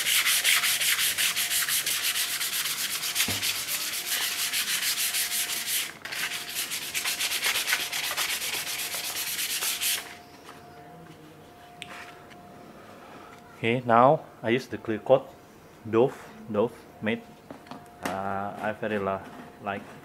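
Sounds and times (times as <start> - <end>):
sandpaper rubbing on wood: 0.0 - 10.2.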